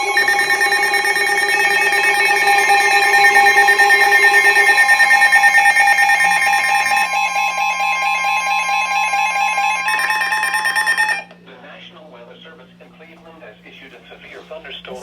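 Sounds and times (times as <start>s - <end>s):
weather radio alert beeps: 0.0s - 11.2s.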